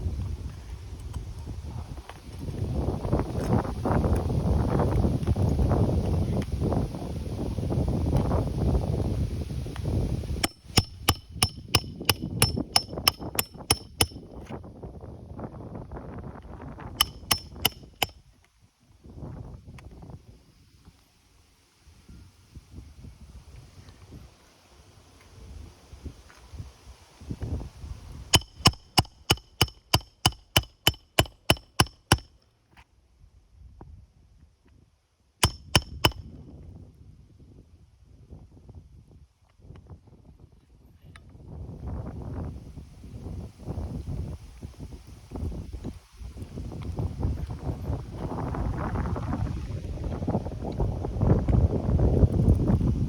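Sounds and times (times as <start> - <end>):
wind buffeting microphone: 0.0 - 20.9, 25.3 - 32.1, 35.4 - 53.0
hammer blows on metal: 10.4 - 14.5, 17.0 - 18.2, 28.4 - 32.3, 35.4 - 36.2.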